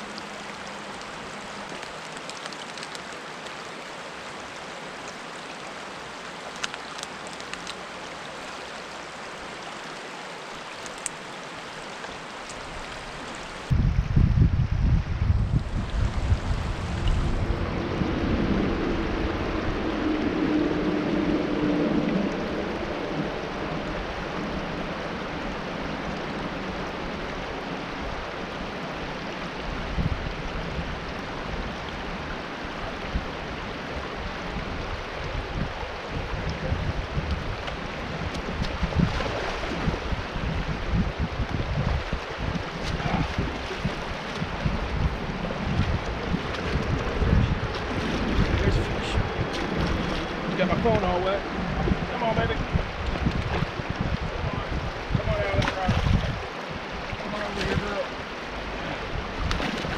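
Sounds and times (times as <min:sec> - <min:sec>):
creek water flowing: 0:00.0 - 0:13.8, 0:15.2 - 0:59.9
wind buffeting microphone: 0:12.6 - 0:28.3, 0:29.6 - 0:59.9.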